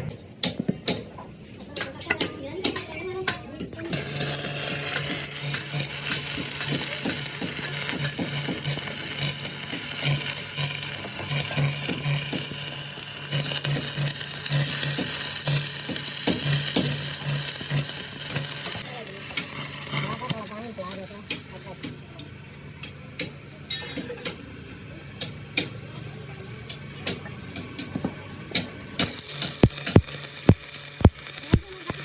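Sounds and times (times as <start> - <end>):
welding arc crackling: 3.9 - 22.0, 29.0 - 32.0.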